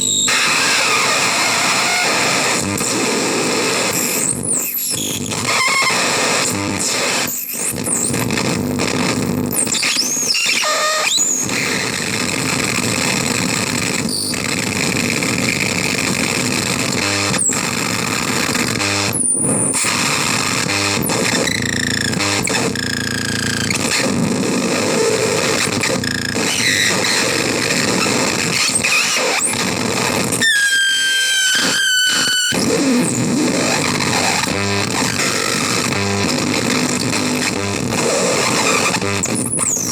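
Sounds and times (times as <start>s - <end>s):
distorted synth noise: 11.5s - 39.9s
shrill sliding squeals: 30.4s - 32.6s.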